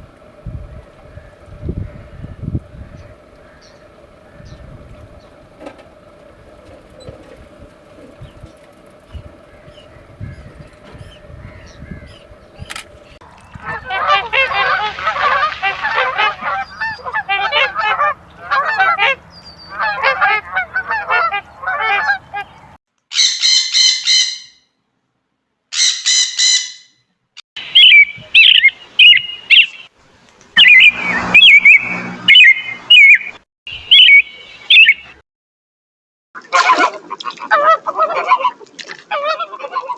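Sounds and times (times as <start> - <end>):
chatter of many birds: 1.0 - 22.7, 27.6 - 29.9, 30.6 - 35.2
loud repeated bird calls: 8.0 - 24.6, 27.6 - 29.9, 30.6 - 35.2.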